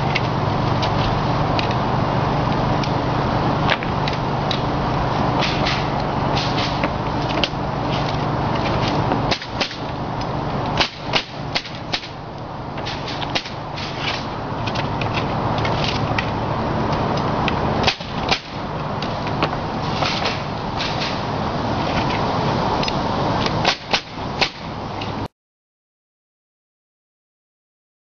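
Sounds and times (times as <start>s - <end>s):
steady machine hum: 0.0s - 25.3s
nail gun shots: 5.4s - 6.8s, 9.3s - 9.8s, 10.8s - 12.2s, 17.8s - 18.6s, 23.6s - 24.7s.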